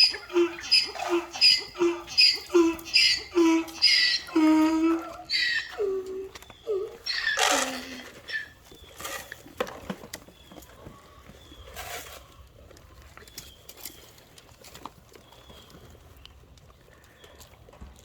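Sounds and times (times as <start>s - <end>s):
short animal call: 0.0s - 8.5s.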